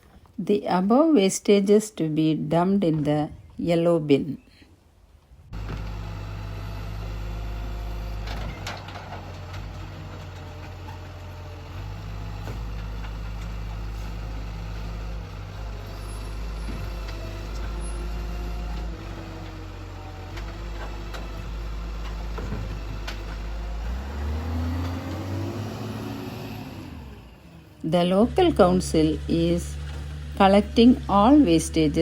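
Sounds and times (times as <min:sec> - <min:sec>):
garbage truck engine running: 0:05.6 - 0:32.0
sharp knocks and clanks: 0:20.3 - 0:23.5.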